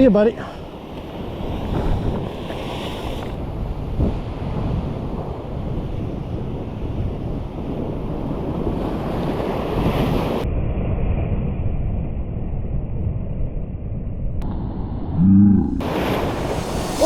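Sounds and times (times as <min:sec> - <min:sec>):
ocean surf on rocks: 0:00.0 - 0:10.4, 0:15.8 - 0:17.0
wind buffeting microphone: 0:00.0 - 0:13.1.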